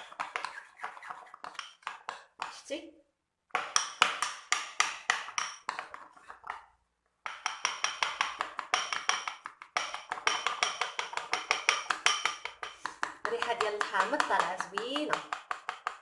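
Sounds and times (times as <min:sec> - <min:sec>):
utensil clinking against bowl: 0:07.3 - 0:16.0.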